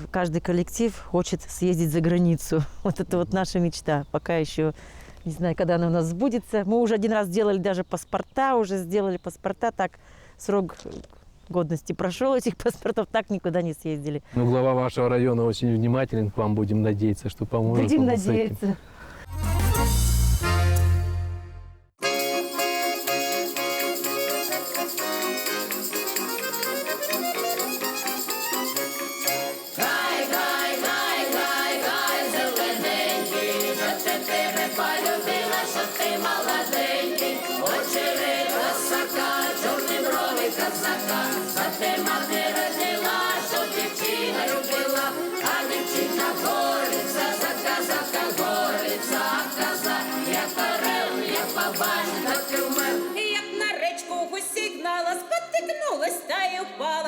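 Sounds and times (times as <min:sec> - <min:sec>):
lively folk instrumental music: 0:19.2 - 0:53.3
jingling shaken percussion: 0:19.3 - 0:20.8, 0:22.0 - 0:53.4.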